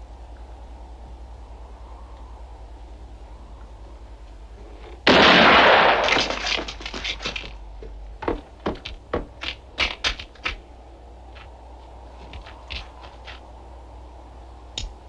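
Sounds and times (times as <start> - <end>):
gunshot echoing: 5.1 - 6.8.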